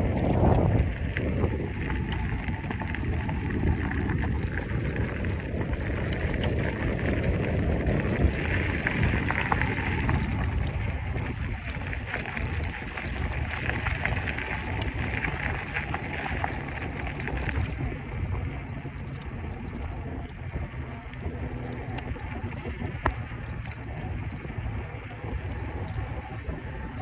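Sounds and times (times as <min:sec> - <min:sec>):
wind buffeting microphone: 0:00.0 - 0:27.0
faint ticks: 0:00.2 - 0:27.0.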